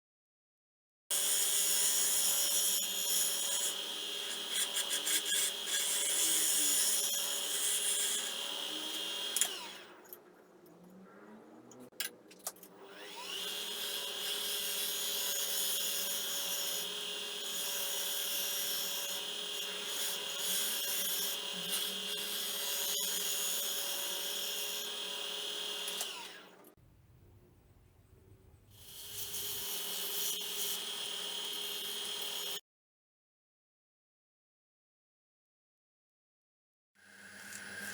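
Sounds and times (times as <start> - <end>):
wood lathe motor humming: 1.2 - 10.0, 12.8 - 26.7, 29.0 - 32.6.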